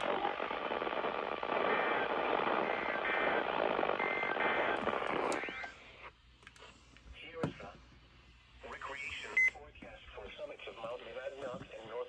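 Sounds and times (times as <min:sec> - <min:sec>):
static hiss: 0:00.0 - 0:06.0
weather radio broadcast: 0:00.0 - 0:12.0.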